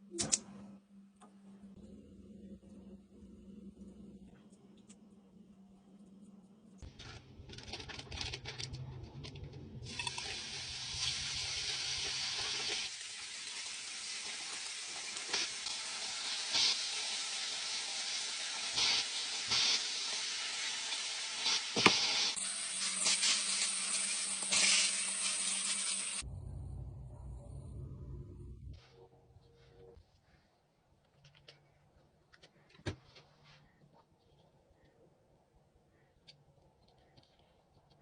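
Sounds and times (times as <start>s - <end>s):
bacon sizzling in a frying pan: 9.9s - 26.2s.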